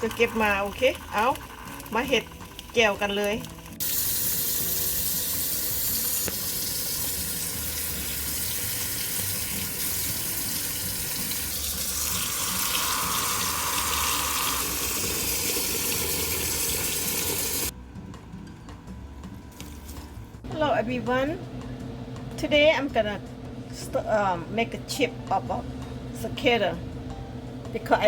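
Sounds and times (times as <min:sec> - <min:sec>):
tap water running into sink: 0:00.0 - 0:17.7.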